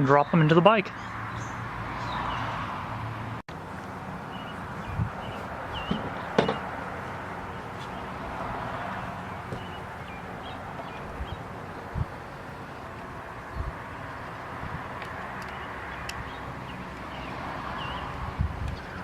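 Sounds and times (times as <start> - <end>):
outdoor background hum: 3.5 - 19.0
metal mount knocks and clicks: 5.9 - 6.7.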